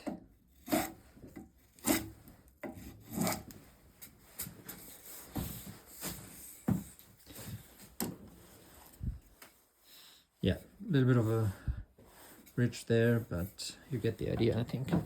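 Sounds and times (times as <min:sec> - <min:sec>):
spokeshave scraping wood: 0:00.5 - 0:06.7.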